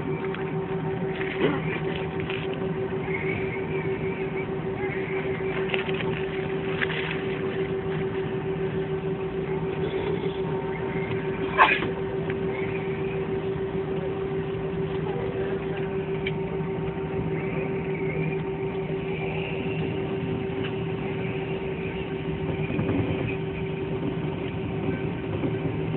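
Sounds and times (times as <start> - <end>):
airliner cabin hum: 0.0 - 25.9.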